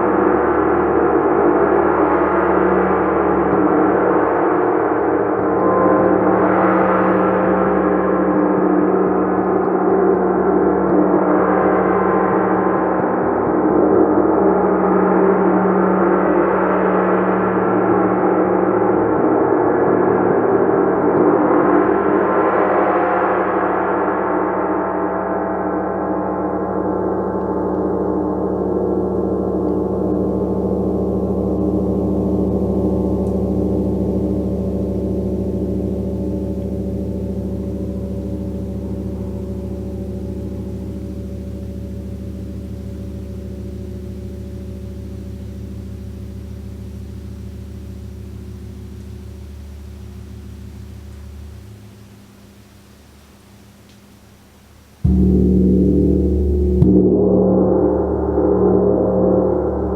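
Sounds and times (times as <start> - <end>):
gong struck with a mallet: 26.5 - 52.0, 55.0 - 59.9.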